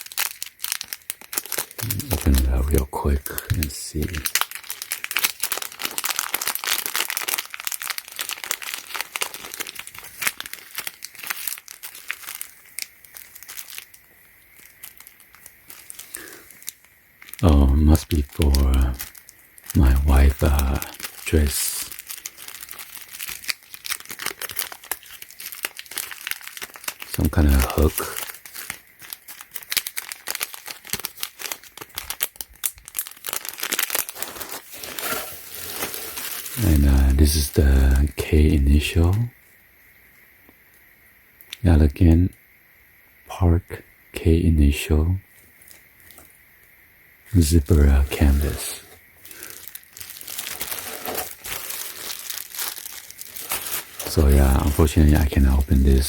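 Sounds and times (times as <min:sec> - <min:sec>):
packaging crinkling and tearing: 0:00.0 - 0:38.1, 0:45.6 - 0:46.3, 0:47.5 - 0:56.0.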